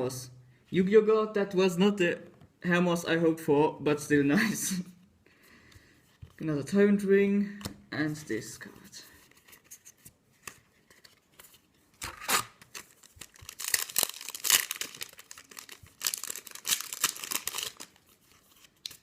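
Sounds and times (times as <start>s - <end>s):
foil wrapper tearing and crinkling: 12.0s - 19.0s.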